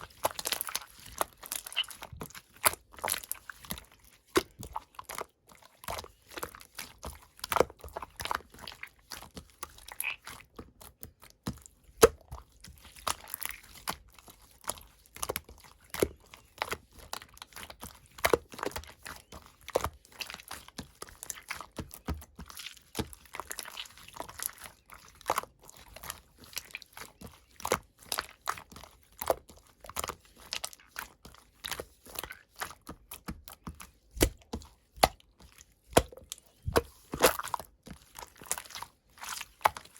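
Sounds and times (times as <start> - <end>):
slime popping and crackling: 0.0 - 4.8, 9.7 - 11.1, 32.2 - 39.9.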